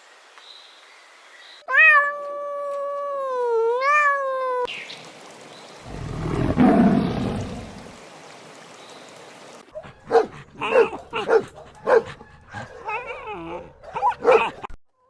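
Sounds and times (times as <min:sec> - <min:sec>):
rough low animal call: 0:05.9 - 0:07.9.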